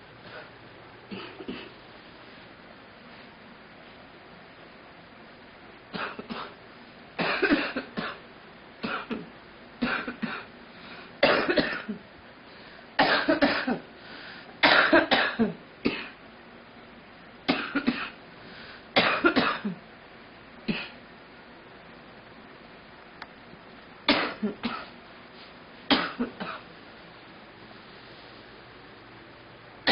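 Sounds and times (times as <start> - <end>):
girl coughing: 1.1 - 1.7, 6.0 - 6.6, 7.2 - 8.2, 8.8 - 10.5, 11.2 - 12.0, 13.0 - 13.8, 14.6 - 16.2, 17.5 - 18.2, 19.0 - 19.8, 20.7 - 21.0, 24.1 - 24.9, 25.9 - 26.6.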